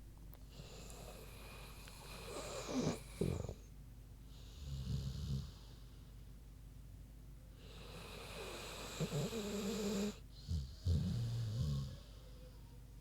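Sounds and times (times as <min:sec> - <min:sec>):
dog snoring: 0:00.5 - 0:03.7, 0:04.4 - 0:05.8, 0:07.6 - 0:12.5.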